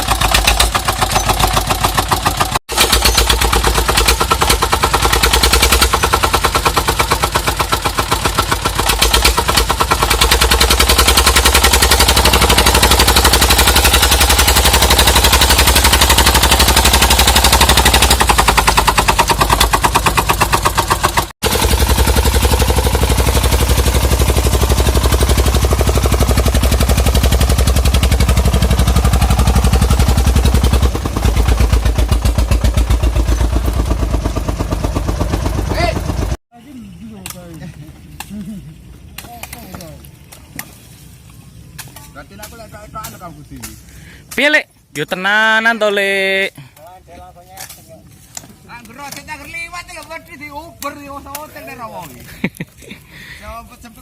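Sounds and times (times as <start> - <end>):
diesel engine chugging: 0.0 - 40.6.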